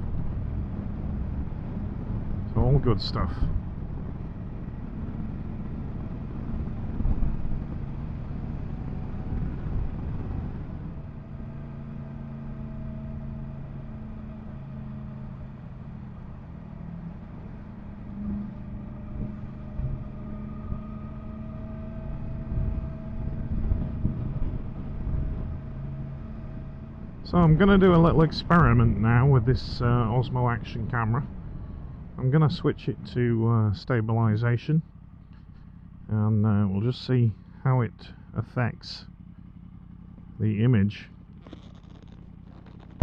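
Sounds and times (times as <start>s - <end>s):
wind rumble on microphone: 0.0s - 11.6s, 21.7s - 33.0s, 41.4s - 43.0s
motorcycle engine running: 0.0s - 33.2s, 34.8s - 36.2s, 37.0s - 43.0s.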